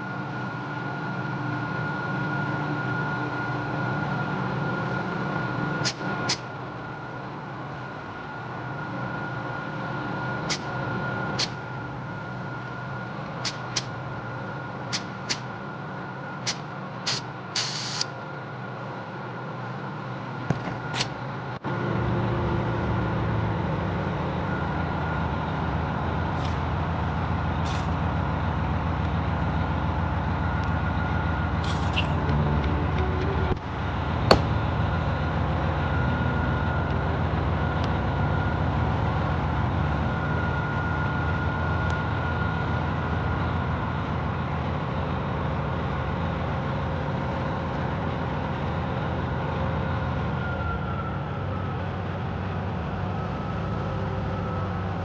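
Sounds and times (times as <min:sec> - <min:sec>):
sharp click: 0:05.8 - 0:06.4, 0:13.4 - 0:13.9, 0:14.9 - 0:15.4, 0:16.5 - 0:18.1
motor running with whine: 0:29.9 - 0:42.8.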